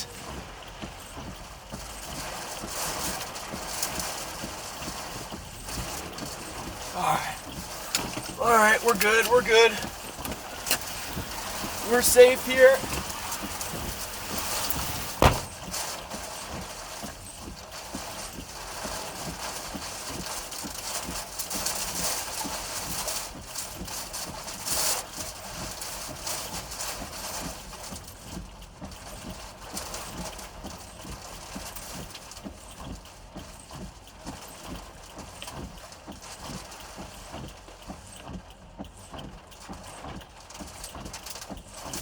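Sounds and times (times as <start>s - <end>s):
rain: 0.0s - 42.0s
wind: 0.0s - 42.0s
footsteps: 7.3s - 15.9s
sharp knock: 14.7s - 15.7s.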